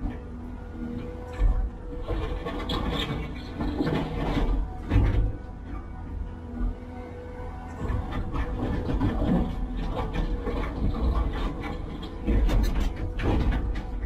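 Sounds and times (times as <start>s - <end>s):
heavy machinery rumbling: 0.0s - 14.0s
metallic clanks and knocks: 7.8s - 14.0s.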